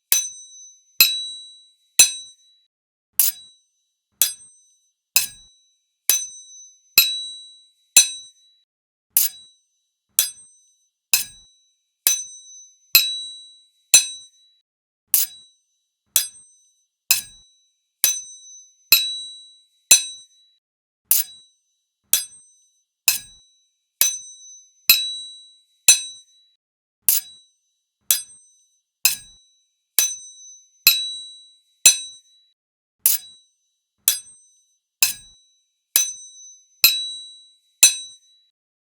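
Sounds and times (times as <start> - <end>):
sword blades clashing: 33.1 - 33.3, 35.0 - 35.3.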